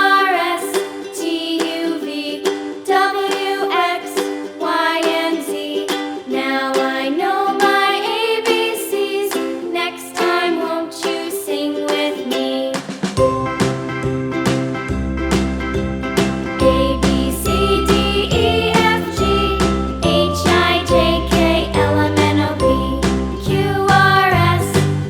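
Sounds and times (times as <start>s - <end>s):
strummed string accompaniment: 0.0s - 25.0s
melody line: 13.2s - 25.0s.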